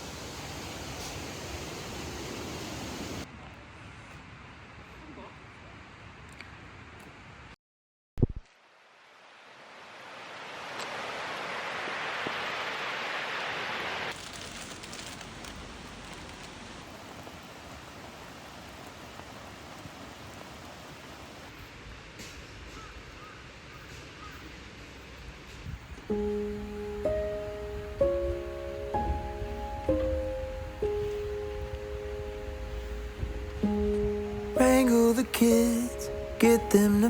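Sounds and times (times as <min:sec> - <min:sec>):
steady outdoor hiss: 0:00.0 - 0:07.6, 0:08.4 - 0:37.0
music: 0:26.1 - 0:37.0.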